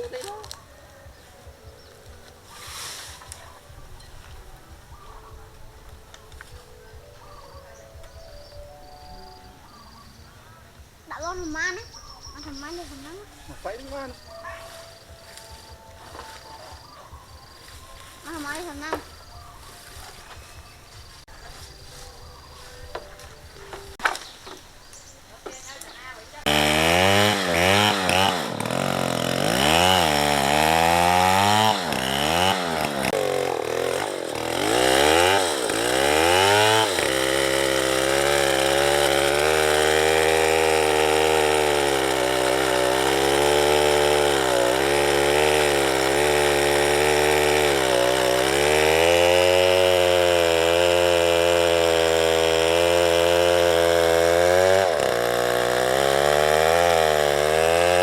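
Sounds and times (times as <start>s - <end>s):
chainsaw cutting into tree: 2.4s - 3.5s, 26.4s - 58.0s
chainsaw engine revving: 14.9s - 19.2s, 26.4s - 58.0s.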